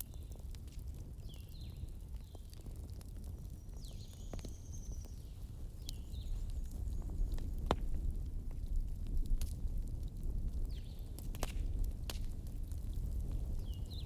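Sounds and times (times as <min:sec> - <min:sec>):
bonfire crackling and popping: 0:00.0 - 0:14.0.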